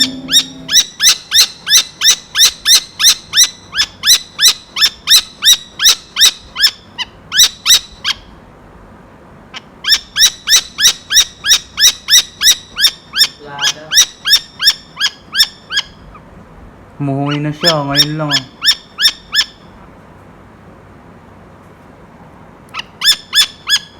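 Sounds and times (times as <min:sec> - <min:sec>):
falcon calling: 0:00.0 - 0:02.8.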